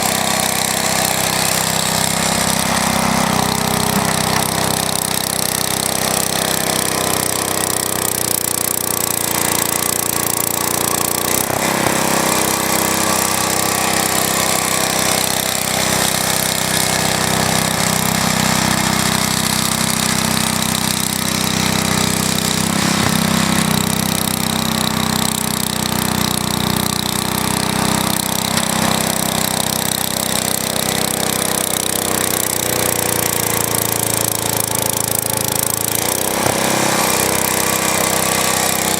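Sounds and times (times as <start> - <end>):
small engine running rattly: 0.0 - 38.9.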